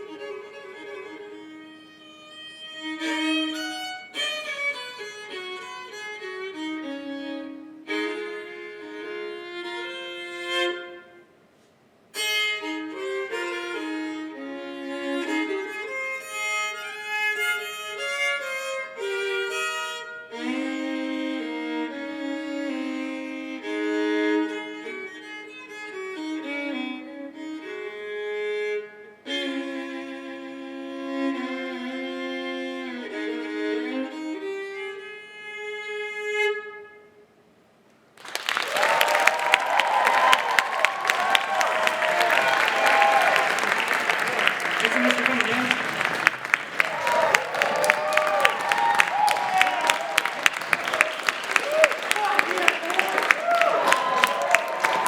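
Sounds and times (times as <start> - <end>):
solo fiddle playing: 0.0 - 11.4, 12.1 - 37.2, 40.6 - 47.0.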